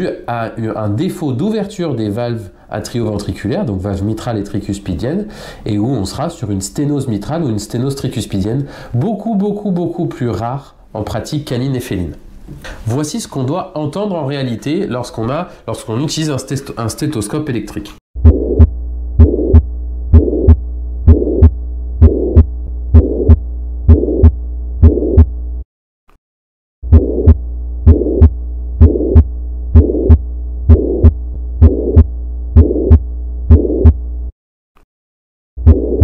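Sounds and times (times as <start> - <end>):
heart murmur: 18.2 - 25.3, 26.9 - 34.0, 35.6 - 36.0
heartbeat lub-dub: 18.2 - 25.5, 26.8 - 34.1, 35.6 - 36.0
steady low hum: 18.2 - 25.6, 26.8 - 34.3.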